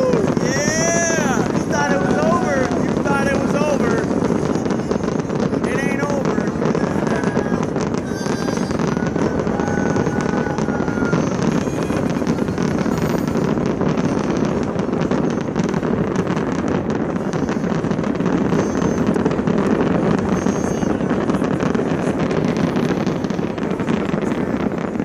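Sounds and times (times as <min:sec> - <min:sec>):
fireworks bursts and crackles: 0:00.0 - 0:25.0.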